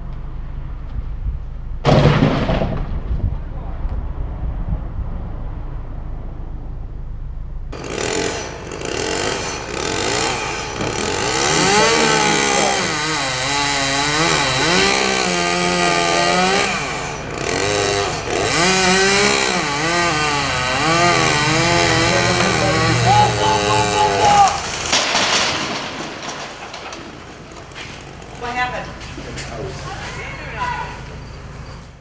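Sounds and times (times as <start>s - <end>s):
chainsaw revving while cutting: 7.8s - 26.0s.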